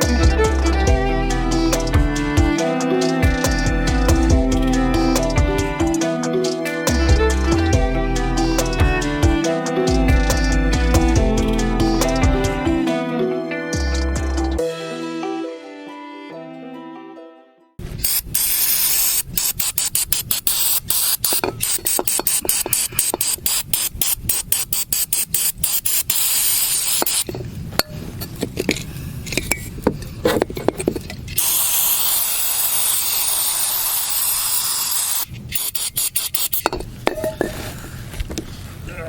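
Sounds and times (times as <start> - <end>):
aerosol spraying: 18.0 - 27.4, 31.4 - 36.8.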